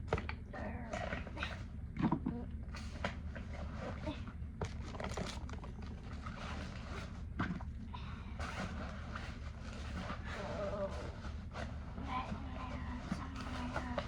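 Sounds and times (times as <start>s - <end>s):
steady low hum: 0.0s - 14.0s
clicks and rustles: 4.6s - 7.6s.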